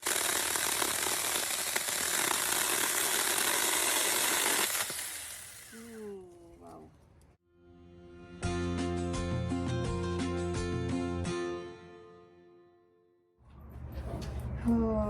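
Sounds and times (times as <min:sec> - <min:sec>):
electric chainsaw running: 0:00.0 - 0:06.1.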